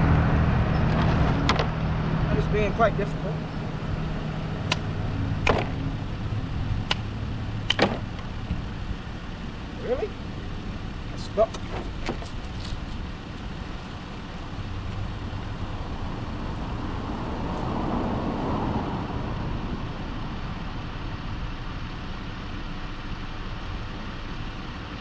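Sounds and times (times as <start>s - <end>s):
motor vehicle noise: 0.0s - 25.0s.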